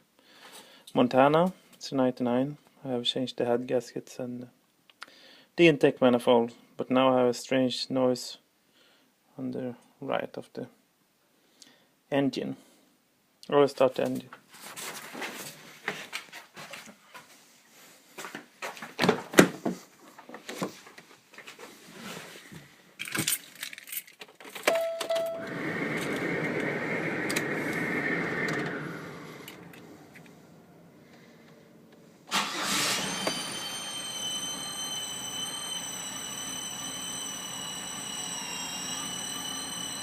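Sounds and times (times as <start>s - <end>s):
keys jangling: 23.0s - 25.2s
short beep: 24.7s - 25.7s
car engine starting and running: 25.1s - 40.0s
loud burst of noise: 25.4s - 40.0s.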